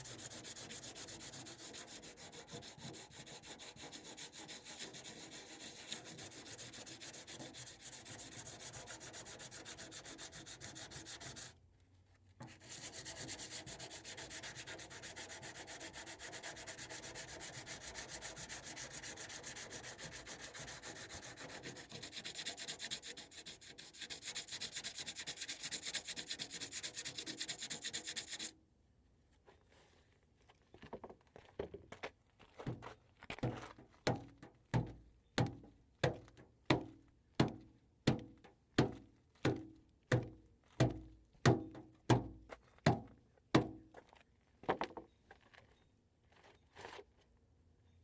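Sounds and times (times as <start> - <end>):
hand sanding with sandpaper: 0.0 - 11.6, 12.5 - 28.5.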